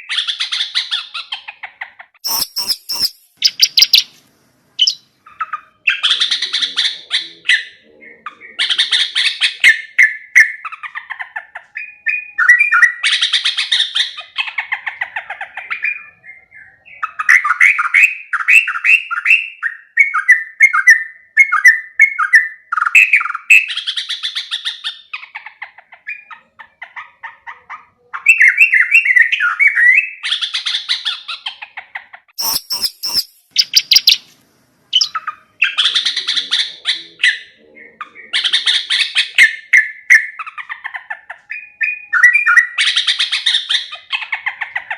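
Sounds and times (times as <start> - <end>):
bird chirping bubbly phrases: 2.2 - 4.2, 4.8 - 9.5, 32.4 - 34.3, 34.9 - 40.8.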